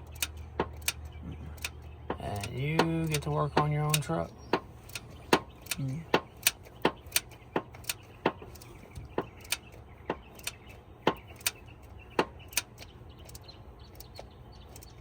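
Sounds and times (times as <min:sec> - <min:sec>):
ratchet wrench clicking: 0:00.0 - 0:01.8, 0:12.5 - 0:14.2.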